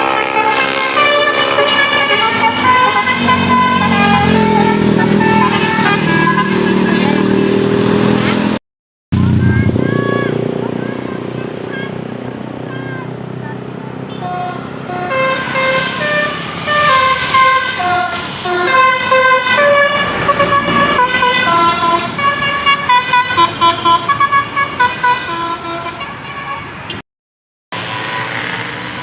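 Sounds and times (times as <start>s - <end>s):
electric trumpet horns tune: 0.0s - 8.6s, 14.1s - 26.8s, 27.8s - 29.0s.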